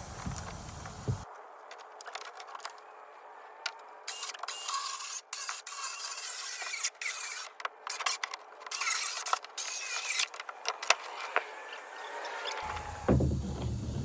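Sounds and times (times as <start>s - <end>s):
circular saw cutting board: 4.1s - 14.0s.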